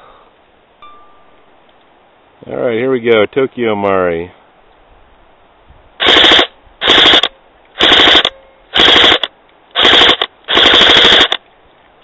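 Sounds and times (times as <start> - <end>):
airsoft gun firing bursts: 6.0 - 11.4.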